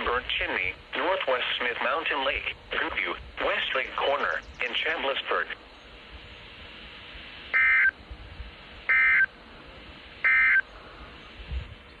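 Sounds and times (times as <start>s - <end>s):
radio hiss: 0.0s - 12.0s
screechy data tone bursts: 7.5s - 8.0s, 8.8s - 9.3s, 10.2s - 10.6s.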